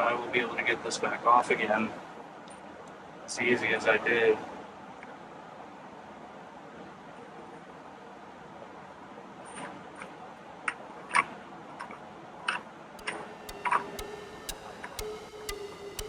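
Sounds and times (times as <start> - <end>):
background music with ticking beat: 13.0 - 16.0.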